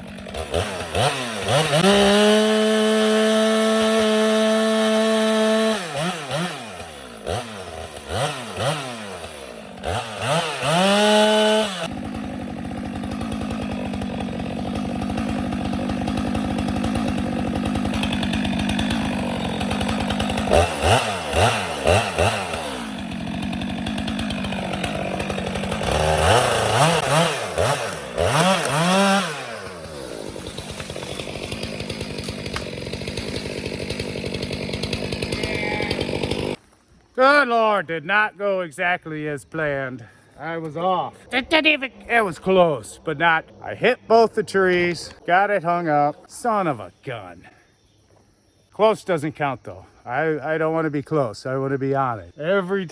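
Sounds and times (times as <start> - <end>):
chainsaw cutting and revving: 0.0 - 36.6.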